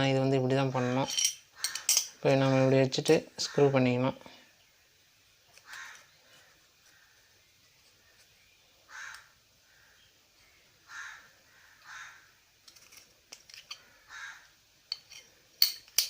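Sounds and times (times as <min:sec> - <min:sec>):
crow cawing: 0:00.8 - 0:01.9, 0:03.4 - 0:03.8, 0:05.6 - 0:06.1, 0:08.9 - 0:10.0, 0:10.8 - 0:12.4, 0:13.8 - 0:14.5.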